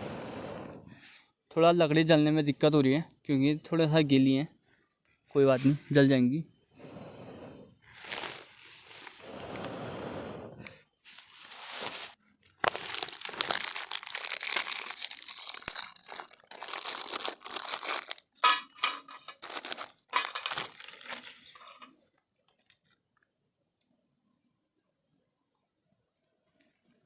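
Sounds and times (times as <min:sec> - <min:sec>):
dry material crinkling: 0:08.0 - 0:09.2, 0:11.1 - 0:22.0.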